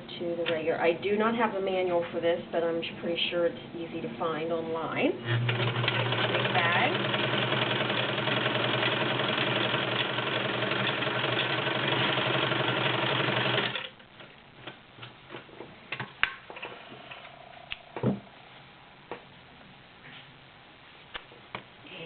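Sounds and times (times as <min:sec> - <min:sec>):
sewing machine running: 0:05.3 - 0:14.0
thump: 0:18.0 - 0:18.3.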